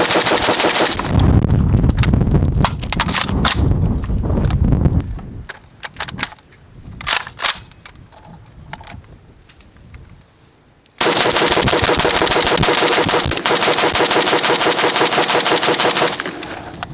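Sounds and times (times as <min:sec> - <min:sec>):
rifle shots with heavy echo: 0:00.0 - 0:01.2, 0:11.0 - 0:16.8.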